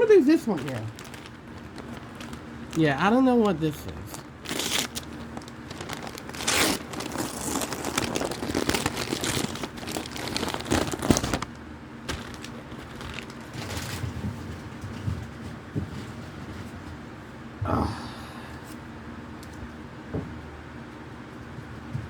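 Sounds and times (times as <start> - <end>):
packaging crinkling and rustling: 0.0 - 14.2.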